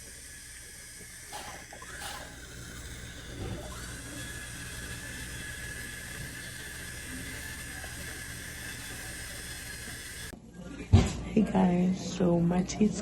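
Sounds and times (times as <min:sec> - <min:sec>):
dental instrument whine: 0:00.0 - 0:10.3.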